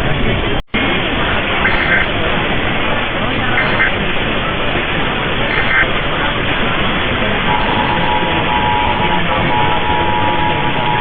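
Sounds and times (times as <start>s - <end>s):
radio static: 0.0s - 11.0s
alert header data burst: 1.5s - 2.2s, 3.5s - 4.2s, 5.5s - 6.1s, 7.4s - 11.0s
two-tone attention signal: 7.5s - 11.0s.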